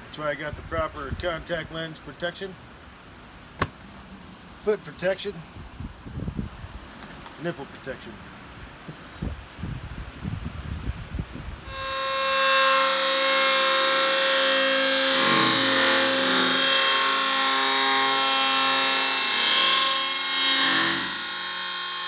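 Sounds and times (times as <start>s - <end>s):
chainsaw running at high speed: 11.7s - 22.0s.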